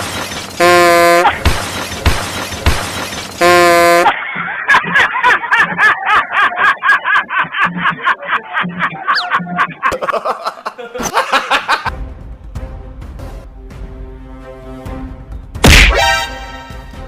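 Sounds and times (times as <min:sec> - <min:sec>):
rhythmic music: 0:00.0 - 0:11.8
train horn blasts: 0:00.6 - 0:01.3, 0:03.4 - 0:04.1.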